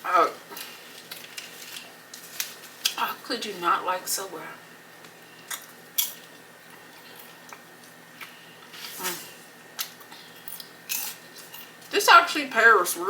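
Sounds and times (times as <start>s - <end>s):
person chewing food: 5.4s - 8.8s.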